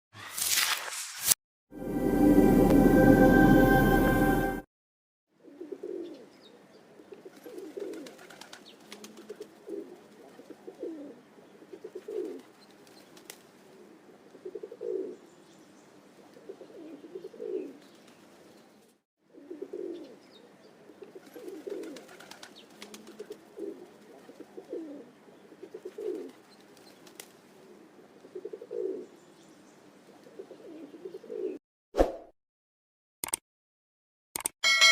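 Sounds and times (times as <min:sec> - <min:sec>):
pigeon cooing: 0:05.4 - 0:06.3, 0:07.1 - 0:12.5, 0:13.8 - 0:15.2, 0:16.3 - 0:17.8, 0:19.3 - 0:20.2, 0:20.9 - 0:26.4, 0:27.6 - 0:29.1, 0:30.1 - 0:31.6.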